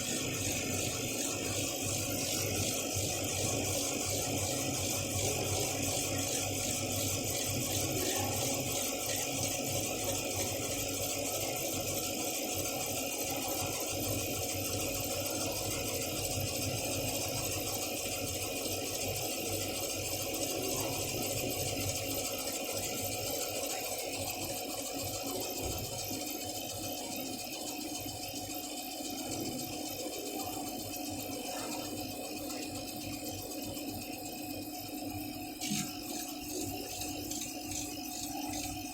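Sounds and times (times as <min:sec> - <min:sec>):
laser cutter whirring and hissing: 0:00.0 - 0:38.9.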